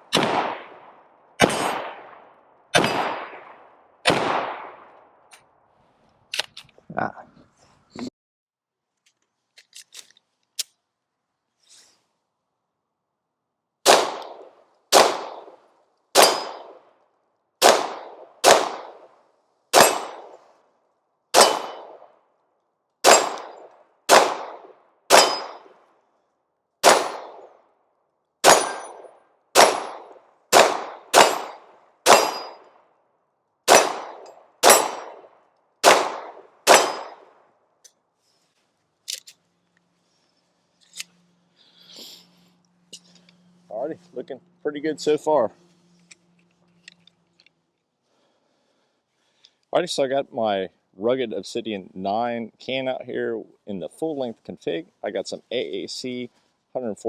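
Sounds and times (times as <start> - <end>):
pistol shots echoing: 0.1 - 5.0, 13.8 - 15.6, 16.2 - 16.8, 17.6 - 19.1, 19.7 - 20.4, 21.4 - 22.1, 23.0 - 25.8, 26.8 - 27.5, 28.4 - 32.6, 33.7 - 37.4.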